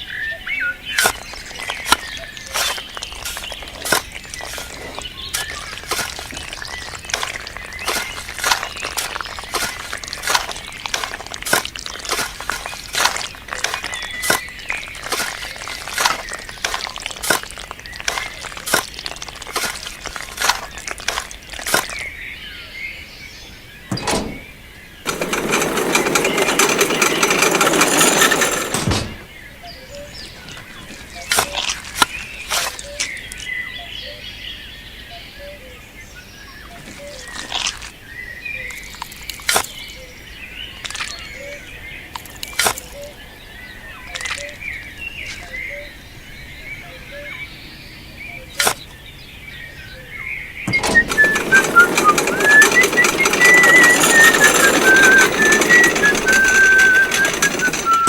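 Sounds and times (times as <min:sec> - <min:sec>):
birds chirping faintly: 0:00.0 - 0:58.0
loud dense rattling: 0:23.9 - 0:29.5, 0:50.7 - 0:58.0.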